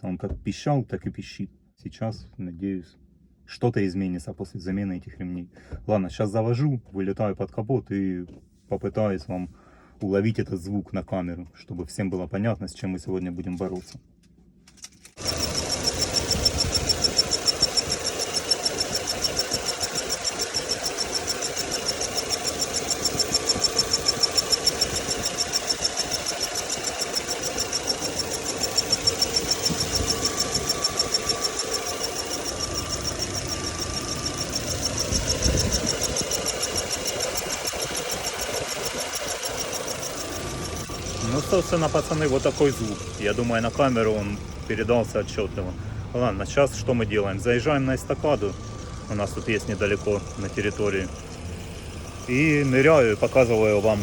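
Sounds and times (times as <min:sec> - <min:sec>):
car engine idling: 0:15.2 - 0:54.0
high-pitched pulsing squeal: 0:15.2 - 0:54.0.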